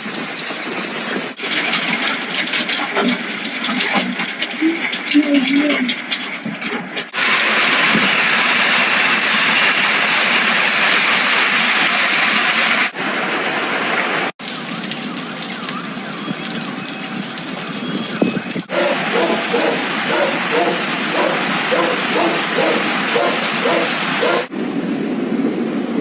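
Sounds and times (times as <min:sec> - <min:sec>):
hail and rain pelting down: 0:00.0 - 0:26.0.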